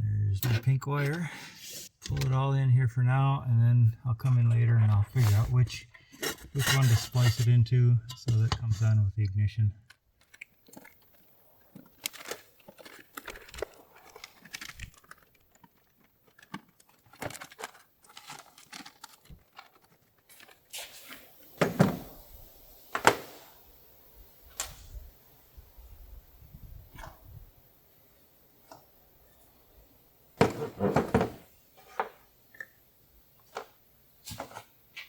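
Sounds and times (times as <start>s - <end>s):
wiring rustling and scraping: 9.8s - 21.4s.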